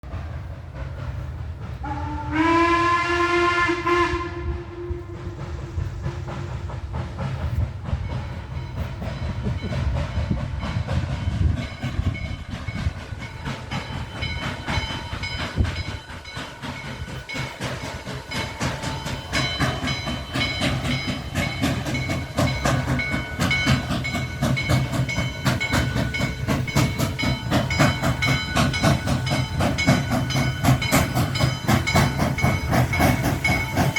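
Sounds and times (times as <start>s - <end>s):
steam locomotive exhaust beat: 0.0s - 33.9s
steam hissing: 0.1s - 33.9s
steam locomotive whistle: 1.8s - 6.6s.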